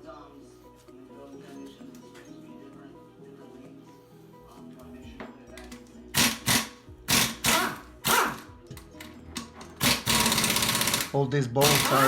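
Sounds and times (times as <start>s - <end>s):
faint background music: 0.0s - 12.0s
air wrench spinning bolts: 6.1s - 8.4s, 9.7s - 12.0s.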